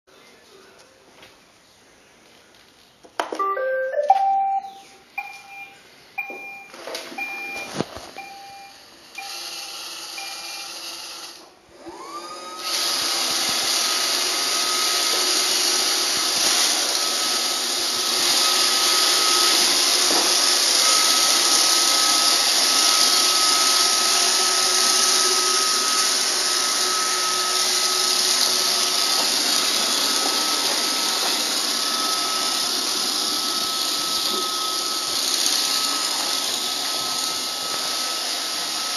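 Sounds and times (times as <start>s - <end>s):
robot vacuum beeping: 3.4s - 11.0s, 11.9s - 38.9s
vacuum motor whine and suction: 9.2s - 38.9s.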